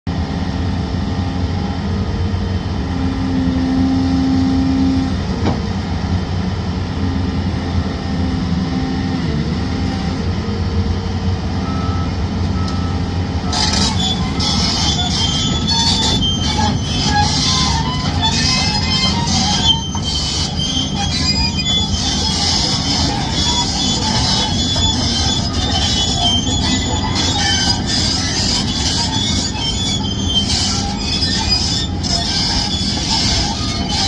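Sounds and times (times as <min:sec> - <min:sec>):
excavator diesel hum: 0:00.1 - 0:34.0
hydraulic whine: 0:06.9 - 0:34.0
metallic squealing and scraping: 0:12.6 - 0:34.0.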